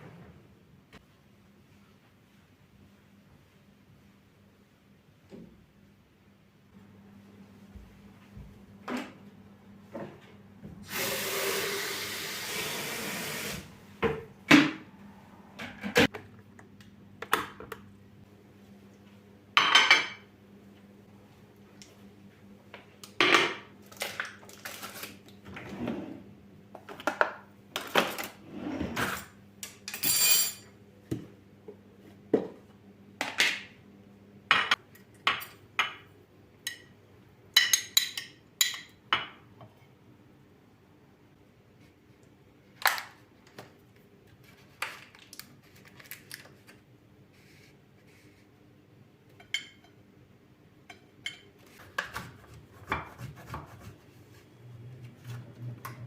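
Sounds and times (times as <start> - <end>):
dishes and utensils clinking: 29.8 - 30.7, 49.4 - 50.0.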